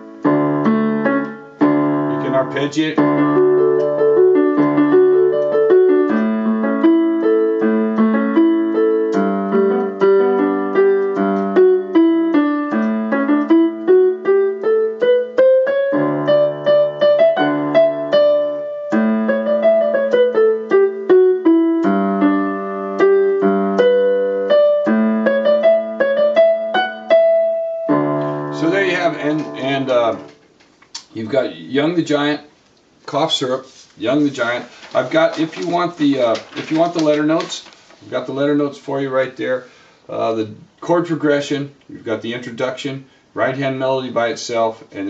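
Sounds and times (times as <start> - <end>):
piano arpeggiated chords: 0.0 - 30.6, 34.4 - 39.4
piano bass notes: 0.0 - 32.5, 33.1 - 44.8.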